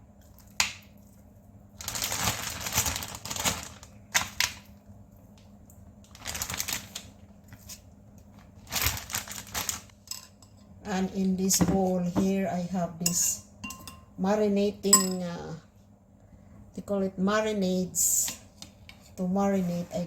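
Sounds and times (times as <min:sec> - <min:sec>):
plastic bag crinkling: 0:01.8 - 0:04.6, 0:06.1 - 0:07.8, 0:08.4 - 0:09.9.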